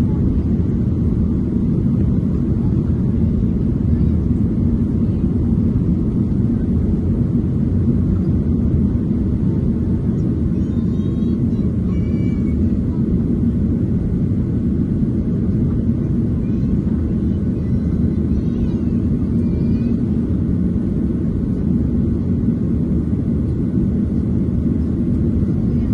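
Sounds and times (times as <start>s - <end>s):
jet engines rumbling in cabin: 0.0s - 25.9s.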